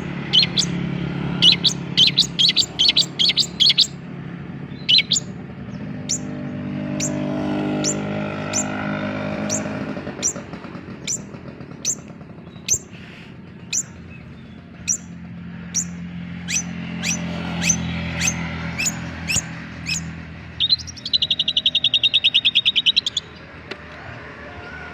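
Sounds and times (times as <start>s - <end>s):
bird rattling chatter: 9.4s - 14.1s.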